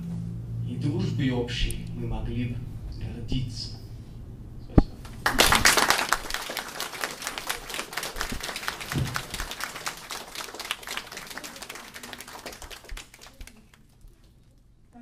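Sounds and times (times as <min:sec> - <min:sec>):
audience applauding: 0:05.0 - 0:14.0.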